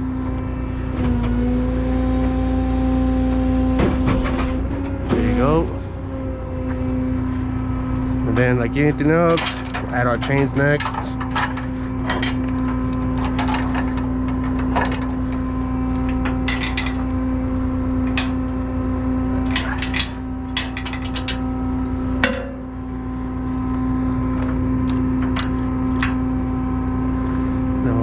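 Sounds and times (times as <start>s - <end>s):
engine humming: 0.0s - 28.0s
metal chains clinking: 9.2s - 14.0s.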